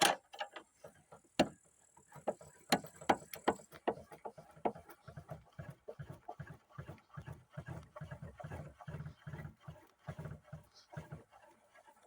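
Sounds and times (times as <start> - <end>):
car jack clicking and knocking: 1.4 - 1.6, 2.2 - 4.8.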